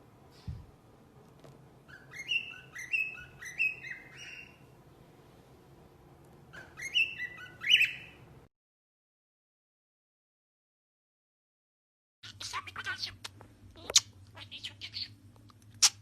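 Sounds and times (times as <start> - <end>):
bird chirping: 1.9 - 4.8, 6.5 - 8.2, 12.2 - 15.2.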